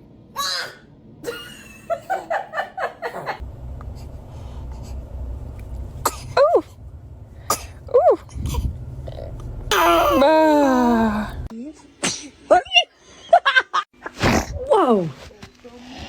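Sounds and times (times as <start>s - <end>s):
baby sneezing: 12.0s - 12.4s.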